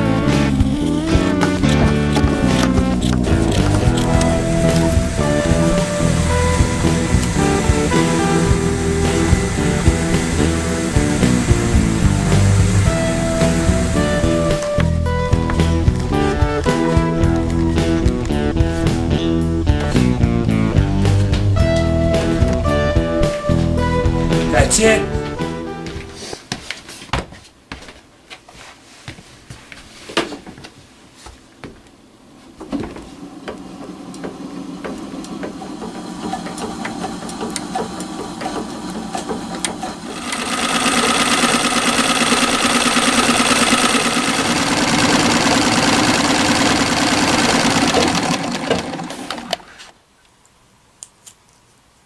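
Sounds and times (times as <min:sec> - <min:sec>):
sewing machine running: 0:02.0 - 0:14.7, 0:33.4 - 0:49.8.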